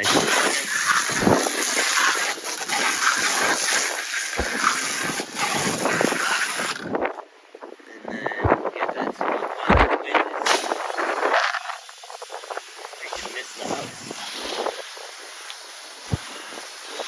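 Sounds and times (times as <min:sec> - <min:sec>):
pressure washer spraying water: 0:00.0 - 0:07.0, 0:10.4 - 0:17.0.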